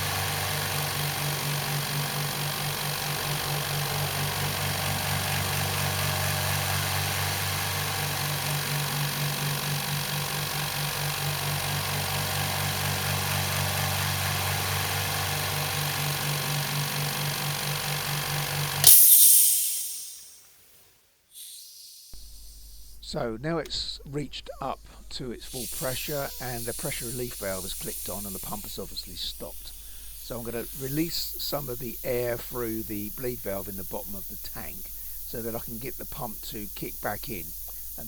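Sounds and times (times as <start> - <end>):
air compressor pulsing hum: 0.0 - 20.4, 21.4 - 38.0
air hissing from relief valve: 14.2 - 23.1, 25.3 - 38.0.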